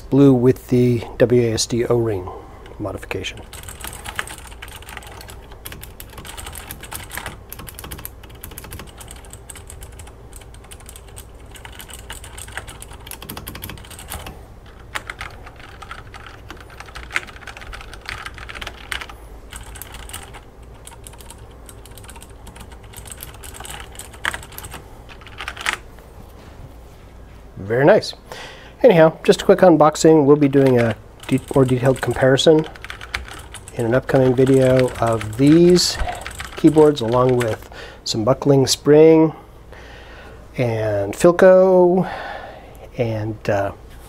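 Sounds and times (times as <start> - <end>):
mechanical keyboard typing: 3.3 - 25.8, 30.4 - 37.6.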